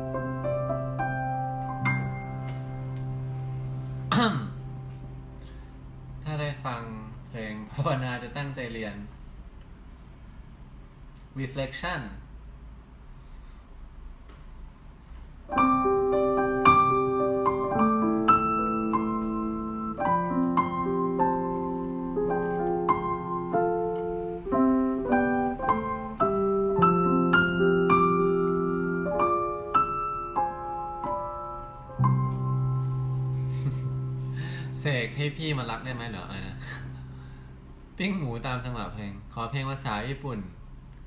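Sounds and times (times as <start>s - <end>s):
slow solo piano chords: 0.0s - 7.3s, 15.5s - 38.7s.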